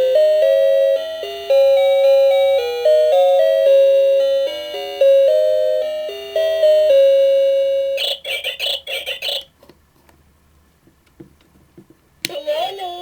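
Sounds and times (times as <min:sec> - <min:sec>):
alarm clock beeping melody: 0:00.0 - 0:08.8.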